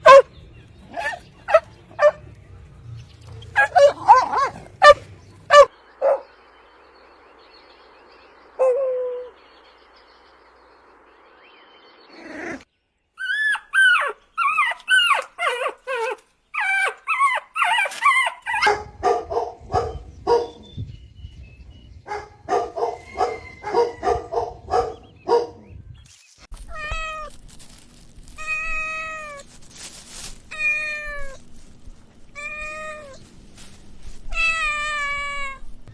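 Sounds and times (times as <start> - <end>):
puppies yipping and whimpering: 0.8 - 2.2, 3.3 - 5.7, 13.2 - 20.0.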